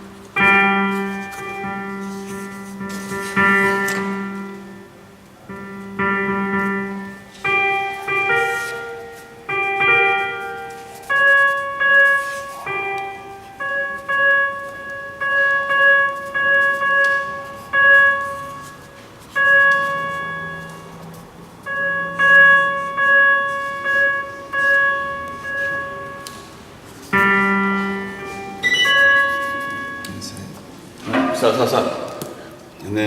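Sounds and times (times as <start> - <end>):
synthesizer bell-like notes: 0.0 - 32.2.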